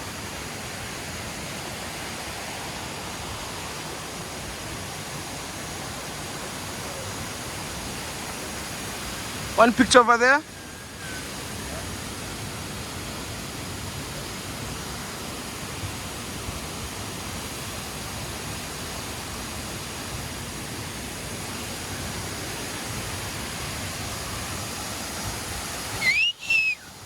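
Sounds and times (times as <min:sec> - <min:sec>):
waterfall rushing: 0:00.0 - 0:27.0
short rising whistle: 0:26.0 - 0:27.0.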